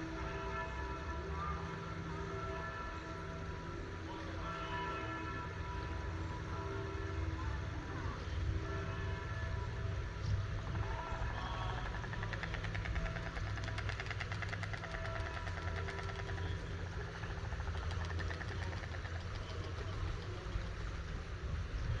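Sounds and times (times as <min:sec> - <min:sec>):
stork clattering its bill: 0:11.4 - 0:21.1.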